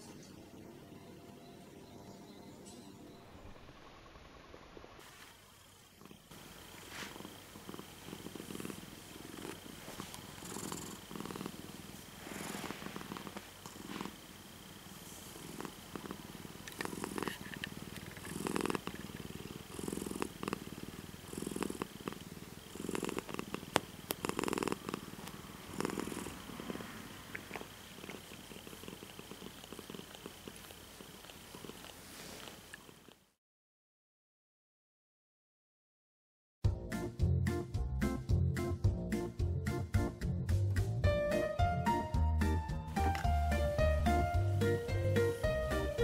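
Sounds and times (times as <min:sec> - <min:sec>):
cat purring: 0:00.0 - 0:01.8, 0:03.2 - 0:33.4, 0:42.4 - 0:46.0.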